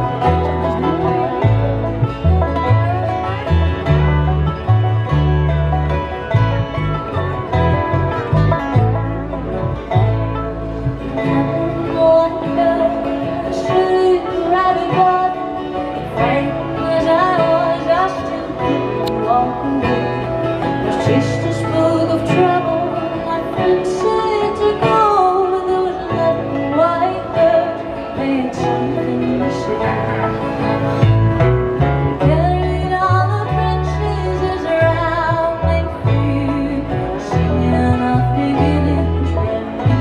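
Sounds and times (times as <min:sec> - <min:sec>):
bass line: 0:00.0 - 0:24.7, 0:26.0 - 0:40.0
plucked string instruments: 0:00.0 - 0:40.0.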